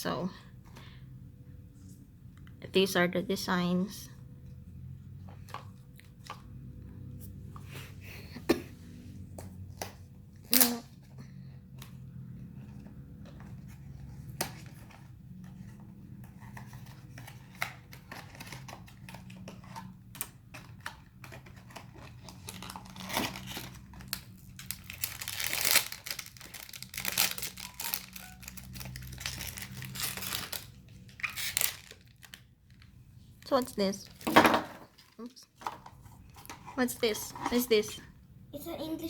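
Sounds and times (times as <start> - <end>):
cardboard and foil tearing: 21.7 - 32.4.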